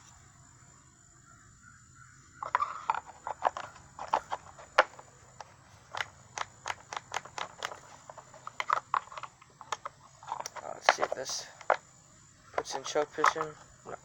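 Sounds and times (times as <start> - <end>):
sharp clicks and taps: 2.4 - 11.8.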